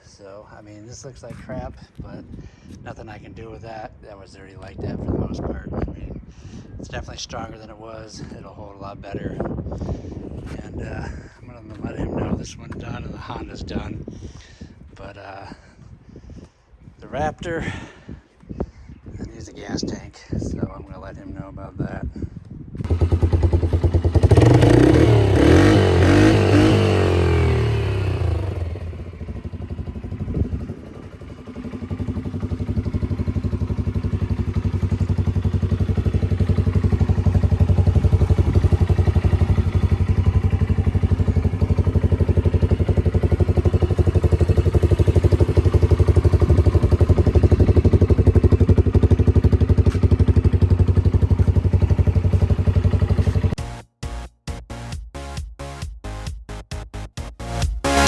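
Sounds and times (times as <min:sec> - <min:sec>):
atv engine revving: 0:22.8 - 0:53.6.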